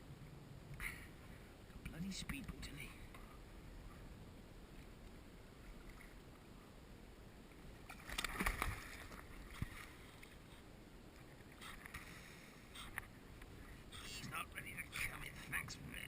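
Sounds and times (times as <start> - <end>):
fish splashing in water: 7.9 - 9.4.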